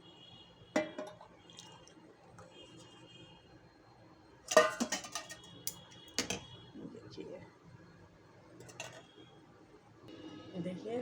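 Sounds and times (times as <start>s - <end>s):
kitchen utensils clinking: 4.5s - 6.4s, 8.6s - 9.0s.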